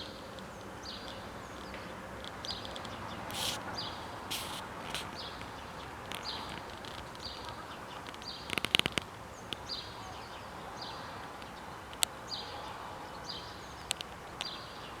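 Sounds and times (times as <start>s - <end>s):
steady hiss: 3.3s - 5.3s.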